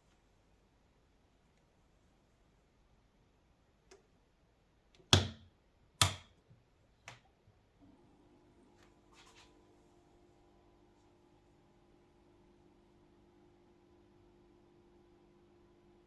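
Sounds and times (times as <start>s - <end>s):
low electrical hum: 6.8s - 16.0s.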